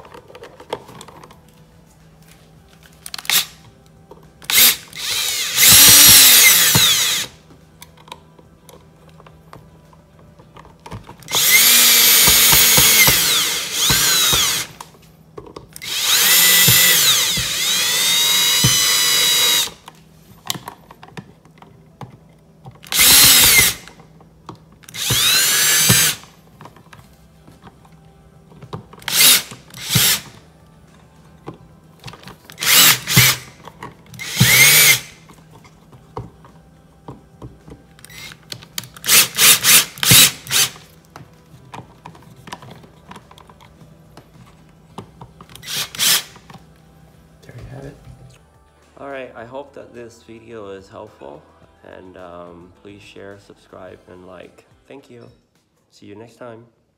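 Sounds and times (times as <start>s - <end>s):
power drill whining: 4.5s - 7.4s, 11.3s - 14.8s, 15.8s - 19.9s, 22.9s - 24.0s, 24.9s - 26.3s, 29.0s - 30.4s, 32.6s - 33.6s, 34.2s - 35.2s, 38.0s - 38.4s, 39.0s - 40.8s, 45.6s - 46.4s.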